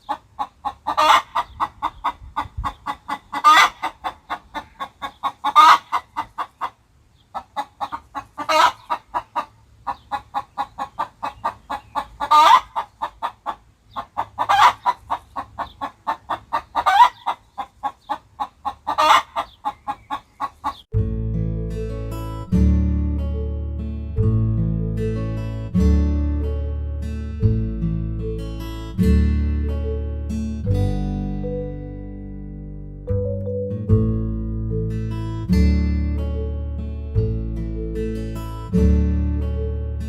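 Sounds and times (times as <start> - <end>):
cartoon chicken clucking: 0.0 - 20.9
chicken squawk: 0.0 - 20.9
strummed acoustic guitar music: 20.9 - 40.0.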